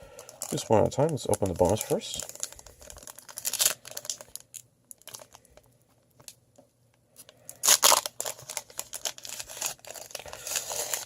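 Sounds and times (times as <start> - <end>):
plastic wrapper crinkling: 0.1 - 6.4, 7.2 - 11.0
plastic wrapper ripping: 0.2 - 6.4, 7.2 - 11.0.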